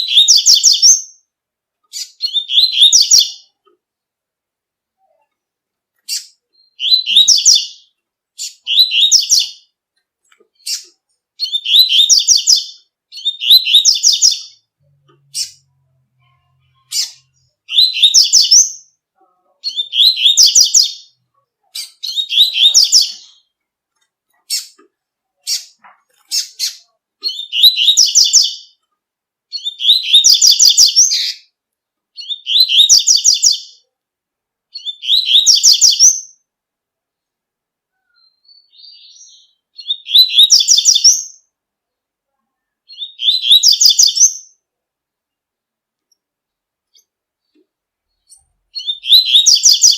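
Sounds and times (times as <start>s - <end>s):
bird twittering song: 0.0s - 1.3s, 1.9s - 3.6s, 6.0s - 9.7s, 10.5s - 19.0s, 19.6s - 23.6s, 25.4s - 28.8s, 29.5s - 31.5s, 32.2s - 33.8s, 34.7s - 36.5s, 38.0s - 41.5s, 42.9s - 44.6s, 46.9s - 49.9s.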